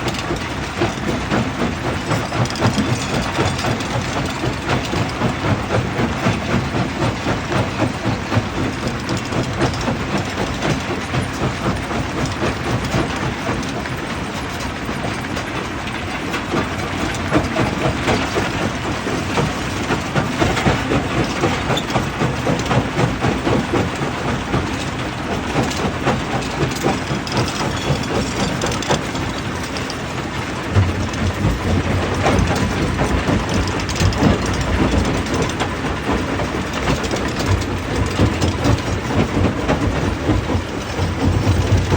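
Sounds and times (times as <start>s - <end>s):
low mechanical rumble: 40.1s - 41.9s.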